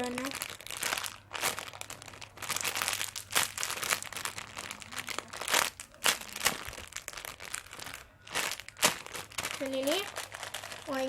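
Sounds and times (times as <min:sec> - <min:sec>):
squishy toy crinkling and rustling: 0:00.0 - 0:11.0.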